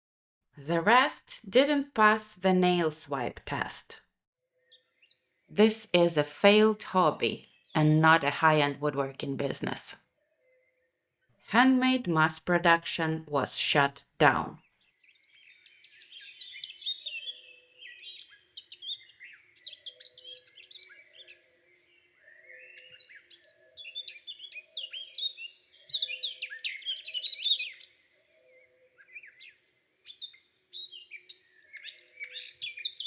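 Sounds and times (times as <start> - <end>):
small birds chirping: 14.5 - 33.0.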